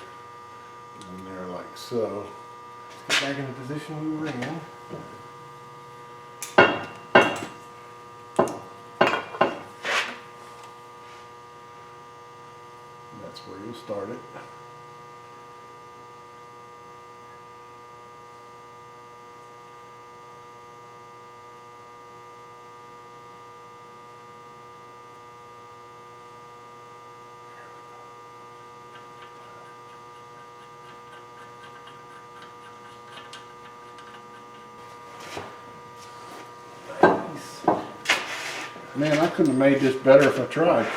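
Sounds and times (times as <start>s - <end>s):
electrical hum: 0.0s - 40.9s.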